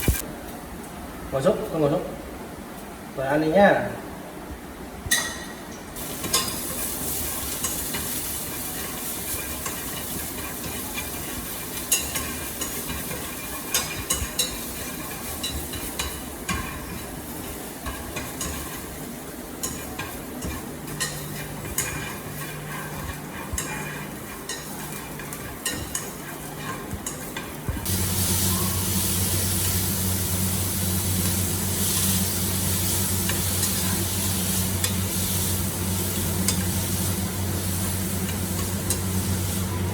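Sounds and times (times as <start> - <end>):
food sizzling in frying pan: 0.0 - 0.2, 6.0 - 39.9
utensil scraping pan: 19.6 - 28.0
steady low hum: 26.6 - 39.9.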